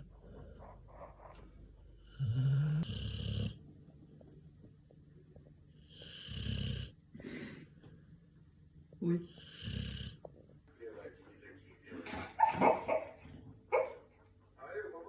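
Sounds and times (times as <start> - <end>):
dog snoring: 2.0 - 3.6, 5.8 - 7.0, 9.1 - 10.4.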